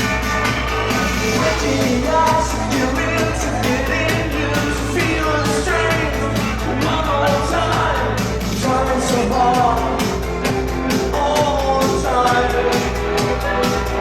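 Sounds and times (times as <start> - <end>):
live electronic band music: 0.0 - 14.0
person singing: 0.0 - 14.0.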